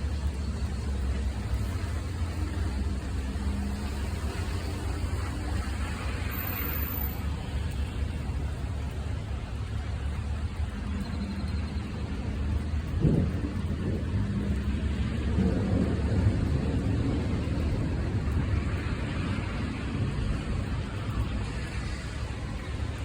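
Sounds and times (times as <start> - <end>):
steady rain: 0.0 - 23.0
distant thunder rumble: 10.6 - 23.0.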